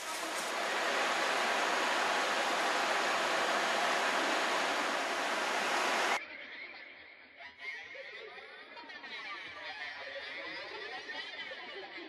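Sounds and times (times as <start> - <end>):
loud rushing noise: 0.0 - 6.2.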